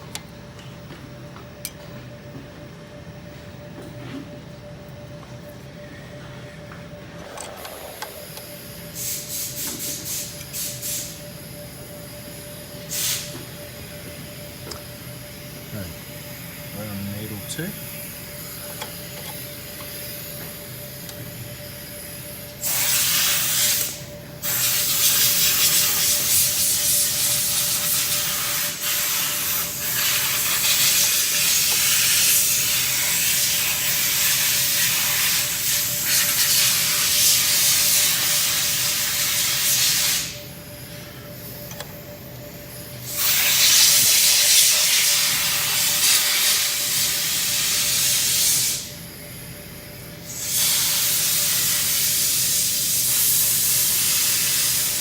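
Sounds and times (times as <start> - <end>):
compressed air hissing: 8.9 - 11.2, 12.9 - 13.4, 22.0 - 40.5, 43.0 - 48.9, 50.3 - 55.0.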